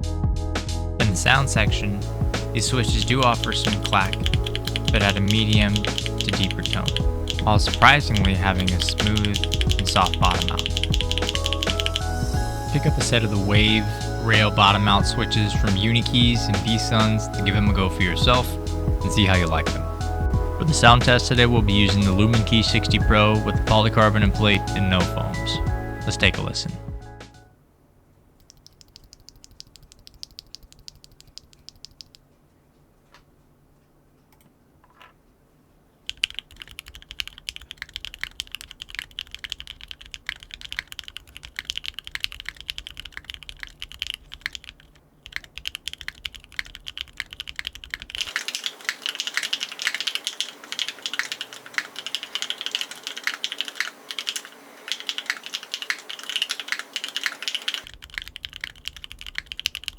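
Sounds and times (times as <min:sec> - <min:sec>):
mechanical keyboard typing: 0:02.9 - 0:12.1, 0:28.4 - 0:32.2, 0:36.1 - 0:59.9.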